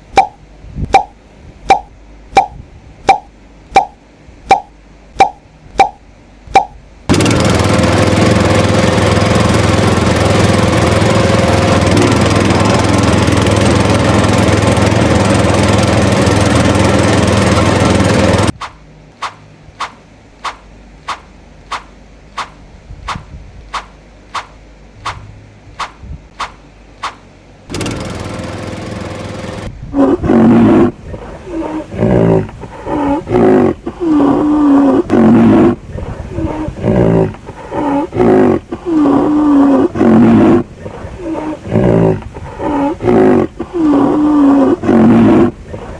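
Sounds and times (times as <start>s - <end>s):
steady humming buzz: 0.0s - 45.9s
small motor running: 27.7s - 29.7s
loud roar-like calls: 29.9s - 45.9s.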